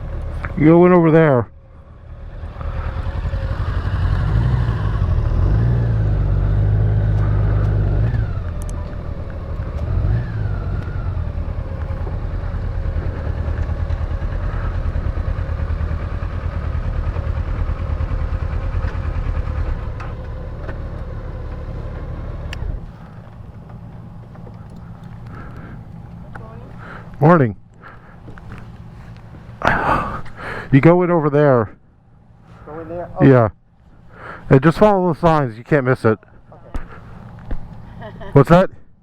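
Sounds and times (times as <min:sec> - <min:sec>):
motorcycle engine running: 0:00.0 - 0:27.2.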